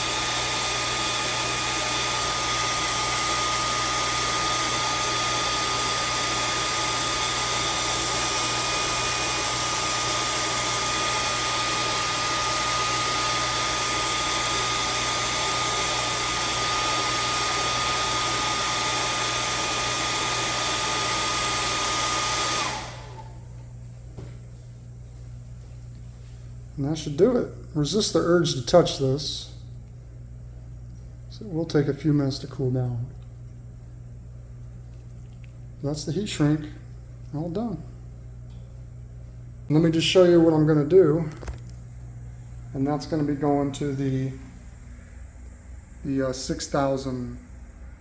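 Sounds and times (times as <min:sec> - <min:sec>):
hair dryer blowing air: 0:00.0 - 0:24.3
hair dryer whine: 0:00.0 - 0:24.4, 0:42.4 - 0:45.0.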